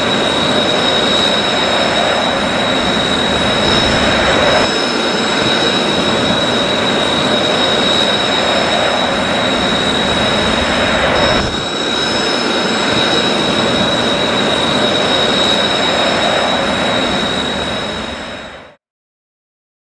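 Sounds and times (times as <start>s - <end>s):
jet engine whine and rush: 0.0s - 18.8s.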